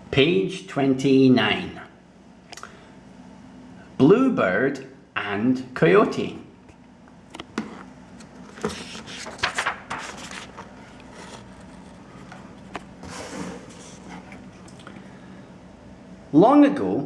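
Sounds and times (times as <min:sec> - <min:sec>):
steady low hum: 0:00.0 - 0:17.0
handling scrapes and rustles: 0:07.6 - 0:14.8.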